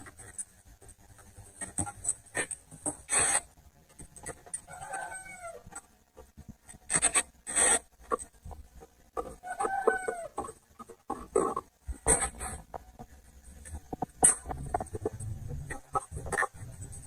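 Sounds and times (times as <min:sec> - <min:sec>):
scraping and tapping: 0:05.7 - 0:17.0.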